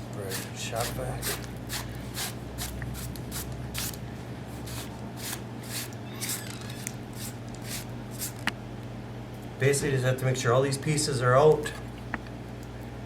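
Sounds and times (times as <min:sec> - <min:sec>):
steady low hum: 0:00.0 - 0:13.0
hand broom sweeping: 0:00.2 - 0:06.4.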